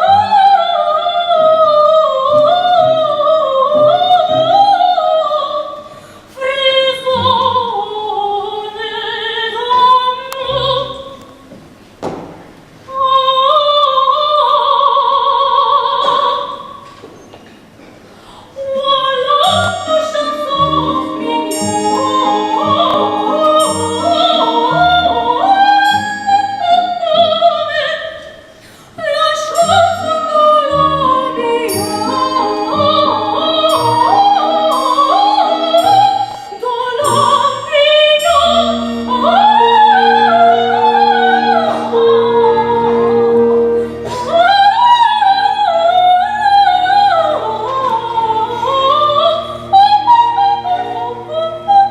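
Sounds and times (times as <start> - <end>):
operatic singing with vibrato: 0.0 - 11.6, 18.5 - 51.9
instrumental accompaniment: 19.4 - 27.8, 29.5 - 45.6.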